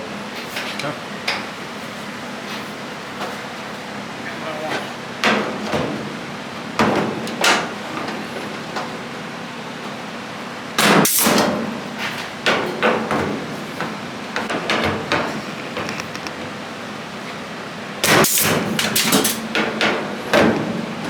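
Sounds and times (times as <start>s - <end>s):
metal knocks on sheet metal: 18.0s - 20.8s.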